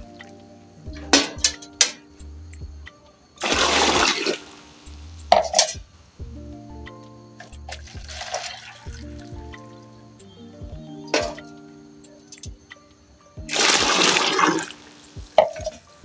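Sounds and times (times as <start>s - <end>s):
background music: 0.0s - 16.0s
water pouring into a bowl: 3.4s - 4.5s, 7.8s - 9.3s, 13.5s - 14.9s
cup clinking: 11.1s - 11.5s.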